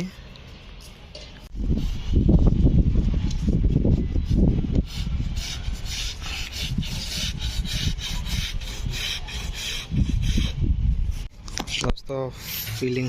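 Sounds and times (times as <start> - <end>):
hand tool rasping scrapes: 4.8 - 10.6, 12.3 - 13.0.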